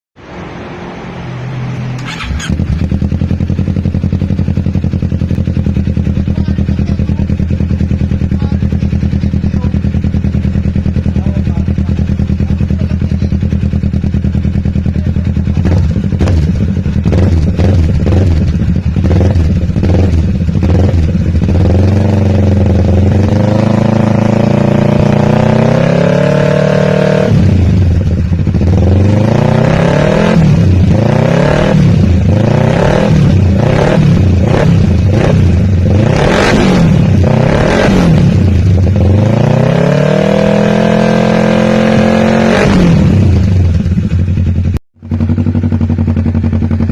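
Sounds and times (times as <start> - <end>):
motorcycle engine revving: 0.2 - 46.9.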